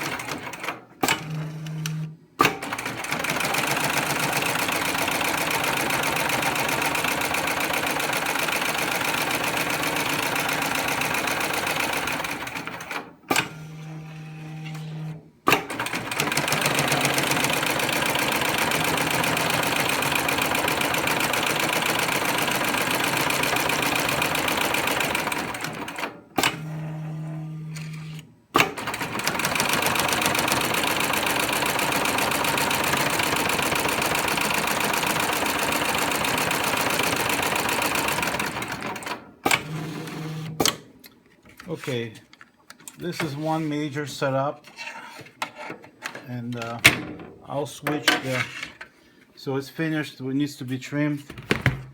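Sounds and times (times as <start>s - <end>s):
sewing machine stitching: 0.0s - 27.0s, 27.8s - 40.8s.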